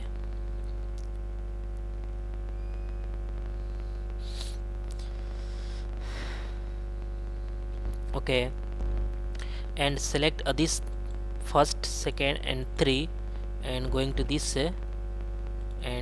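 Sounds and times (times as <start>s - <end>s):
faint clicks: 0.0s - 5.2s, 6.9s - 9.6s, 10.8s - 11.4s, 14.8s - 15.8s
electrical hum: 0.0s - 16.0s.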